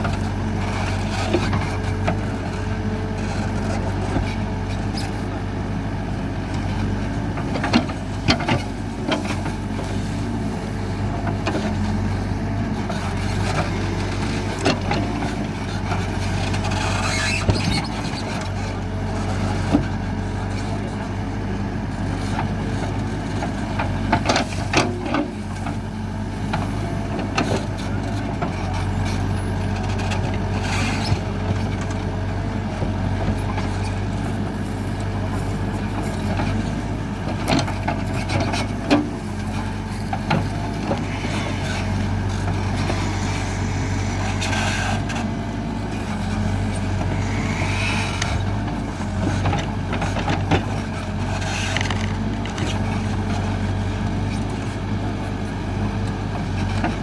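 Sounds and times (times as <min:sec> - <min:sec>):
diesel engine running: 0:00.0 - 0:57.0
digging knocks and clanks: 0:26.5 - 0:53.8
short hissing: 0:47.2 - 0:48.2.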